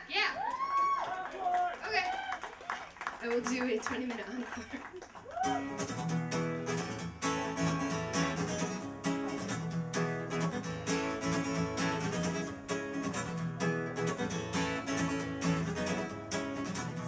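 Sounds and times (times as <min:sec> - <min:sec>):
acoustic guitar strumming: 0:05.4 - 0:17.0.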